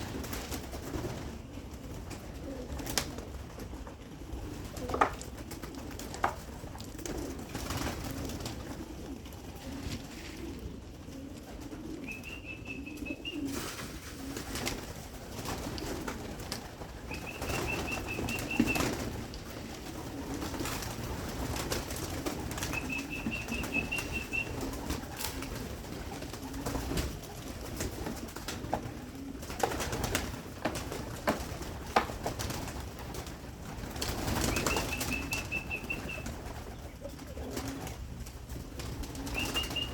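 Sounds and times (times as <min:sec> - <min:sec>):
pigeons cooing: 0:00.0 - 0:39.9
wings flapping: 0:00.0 - 0:39.9
pigeons pecking clicks: 0:14.2 - 0:36.7, 0:37.3 - 0:39.9.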